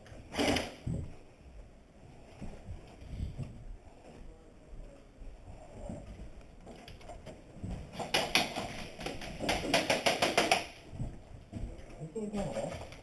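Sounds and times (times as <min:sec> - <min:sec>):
airsoft guns firing: 0:08.0 - 0:10.8.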